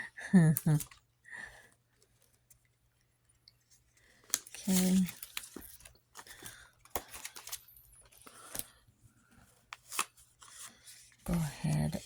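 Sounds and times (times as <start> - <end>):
paper rustling: 3.7 - 8.8, 9.4 - 12.0.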